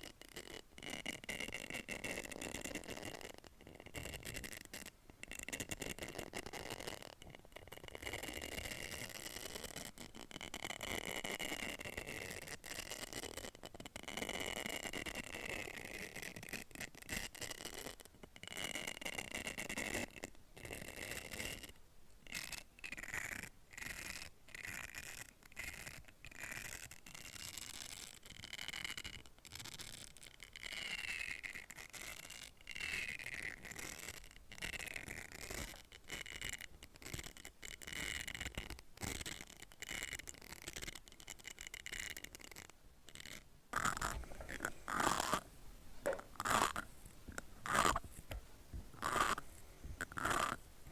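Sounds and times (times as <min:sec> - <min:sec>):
tool scraping hollow capsule: 0:43.8 - 0:50.9.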